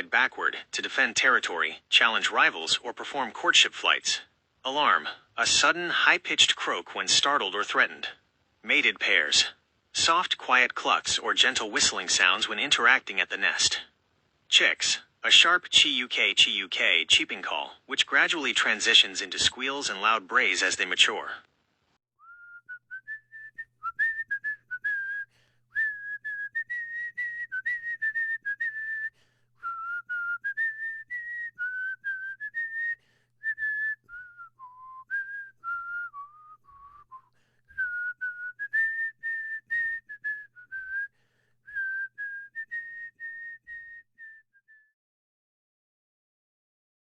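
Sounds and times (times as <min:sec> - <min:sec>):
person whistling a tune: 0:22.2 - 0:45.0.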